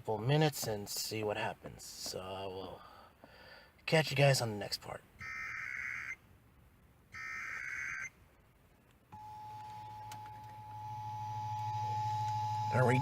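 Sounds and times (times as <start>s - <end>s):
low hum: 9.1s - 13.0s
two-tone attention signal: 9.2s - 13.0s.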